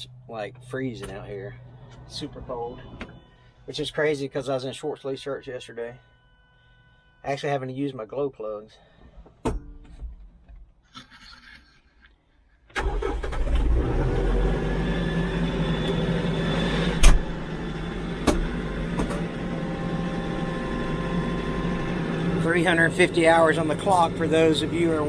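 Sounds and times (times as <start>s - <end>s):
tractor diesel engine running: 12.8s - 25.0s.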